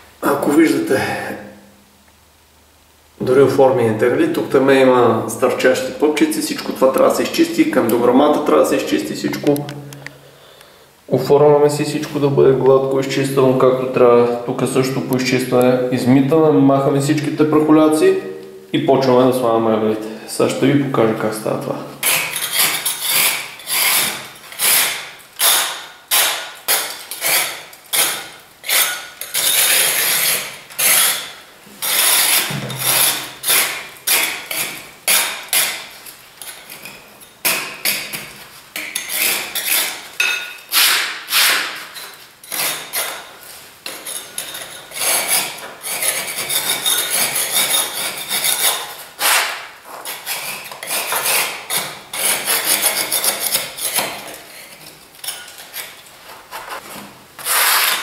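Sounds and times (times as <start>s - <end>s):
spatula scraping plaster: 22.0s - 58.0s.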